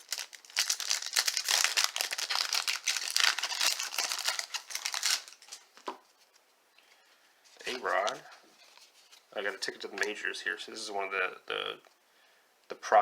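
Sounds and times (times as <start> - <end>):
wrapper crinkling and tearing: 0.0 - 5.8.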